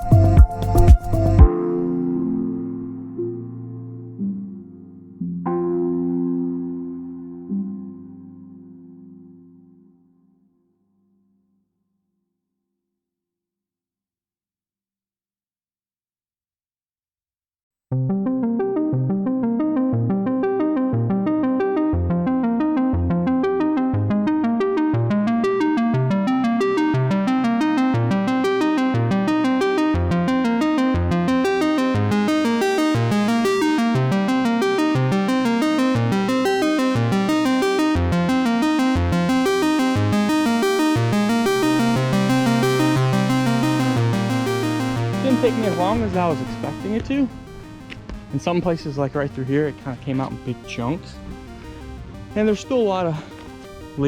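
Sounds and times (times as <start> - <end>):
synthesizer and keyboard music: 0.0 - 10.4, 17.9 - 54.0
steady low pulse: 41.2 - 54.0.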